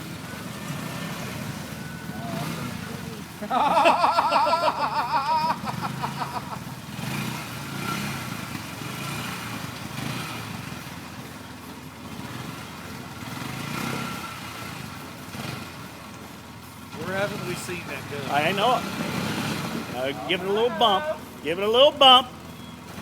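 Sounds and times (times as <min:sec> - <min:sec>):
engine running under load: 0:00.0 - 0:23.0
raised voice: 0:19.9 - 0:22.3.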